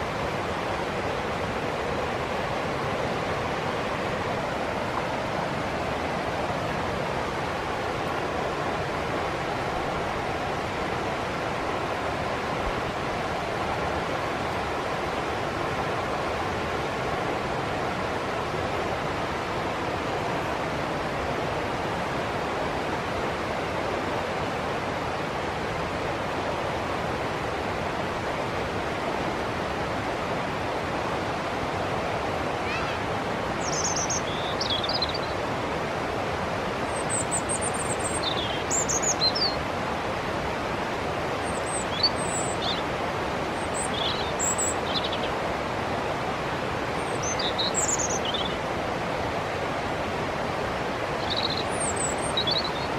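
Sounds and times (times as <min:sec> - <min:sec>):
river rushing: 0:00.0 - 0:52.9
bird chirps: 0:33.6 - 0:35.3, 0:36.9 - 0:39.6, 0:43.7 - 0:45.3, 0:47.1 - 0:48.6, 0:51.2 - 0:52.9.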